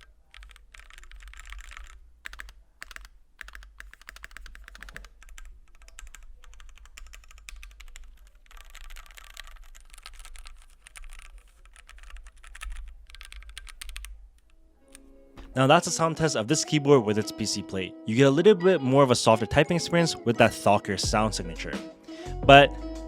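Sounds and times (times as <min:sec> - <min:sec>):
mechanical keyboard typing: 0:00.0 - 0:15.1.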